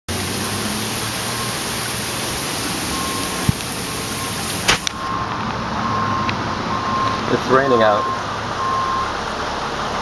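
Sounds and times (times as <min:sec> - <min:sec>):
heavy rain hissing: 0:00.1 - 0:10.0.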